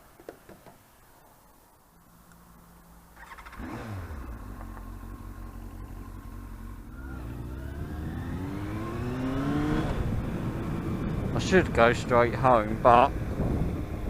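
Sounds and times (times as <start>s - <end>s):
motorcycle engine revving: 3.1s - 11.8s.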